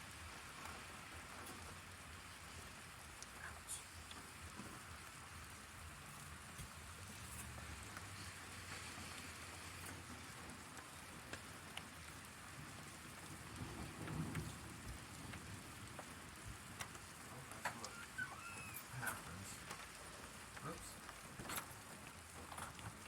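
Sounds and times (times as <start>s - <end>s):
steady rain: 0.0s - 23.0s.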